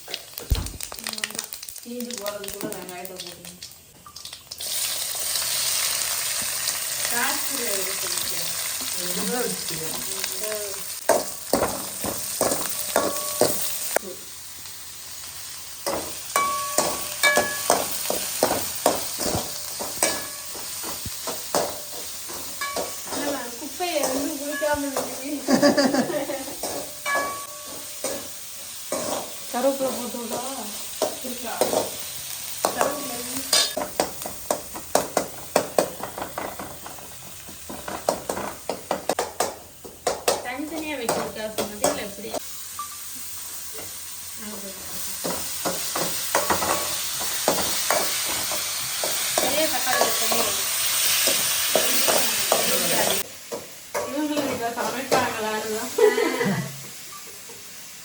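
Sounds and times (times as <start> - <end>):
onions sizzling in oil: 0.0 - 58.0
metal clinking on pan: 12.4 - 13.7, 15.8 - 21.8, 22.4 - 23.4, 25.9 - 28.3, 32.6 - 37.0
spoon scraping a pan: 28.9 - 34.6.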